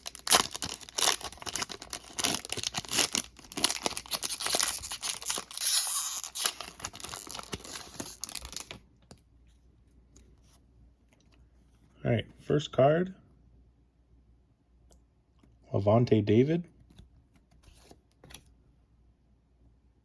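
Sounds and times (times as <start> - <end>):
foil wrapper tearing and crinkling: 0.0 - 8.8.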